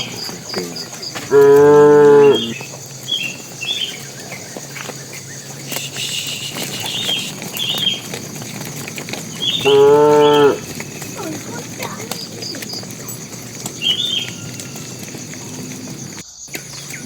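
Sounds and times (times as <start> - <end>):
cattle mooing: 1.2 - 2.6, 9.0 - 16.1.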